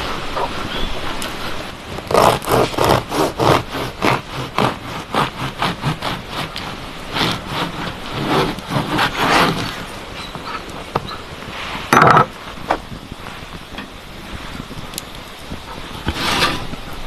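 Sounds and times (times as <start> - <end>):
hand saw cutting wood: 0.0 - 10.0, 16.0 - 16.7.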